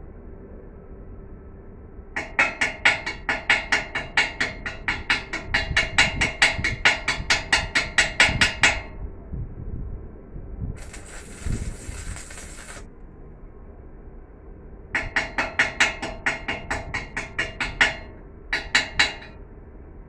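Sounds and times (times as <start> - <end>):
hiss: 10.8 - 12.9.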